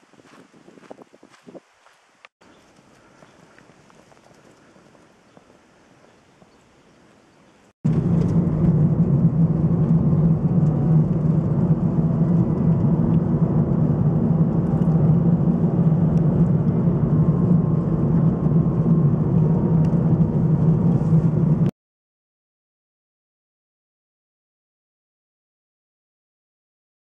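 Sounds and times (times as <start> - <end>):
car engine and road noise: 7.6 - 21.7.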